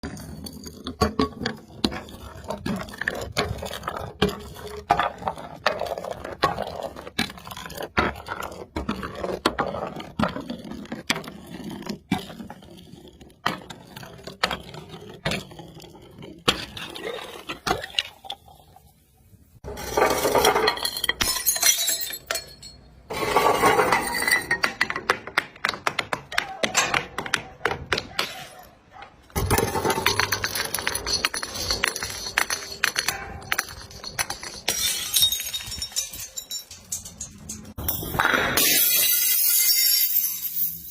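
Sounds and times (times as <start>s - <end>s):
hard objects clicking and clinking: 19.7s - 40.9s.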